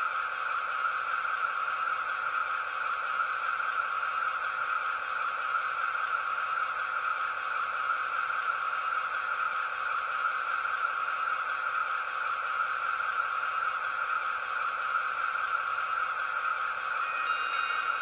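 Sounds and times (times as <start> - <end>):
thin diesel engine drone: 15.7 - 18.0.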